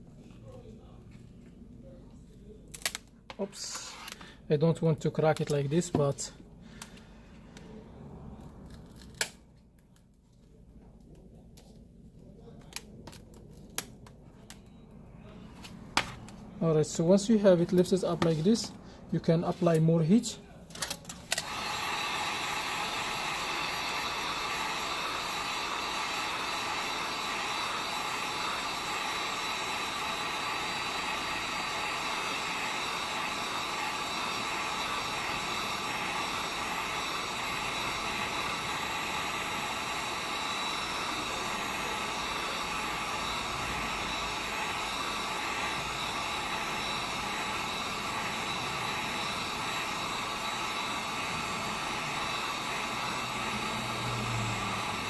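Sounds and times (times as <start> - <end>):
heat gun blowing air: 17.0 - 20.4, 21.2 - 55.0.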